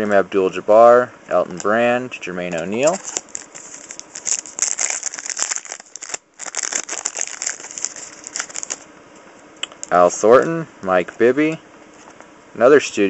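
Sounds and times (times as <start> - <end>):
wrapper tearing and crinkling: 2.6 - 8.8.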